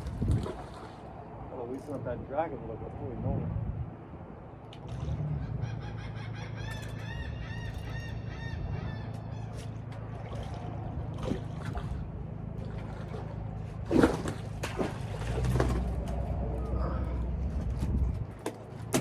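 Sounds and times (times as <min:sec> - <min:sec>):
loud thump or splash: 0:13.8 - 0:15.9.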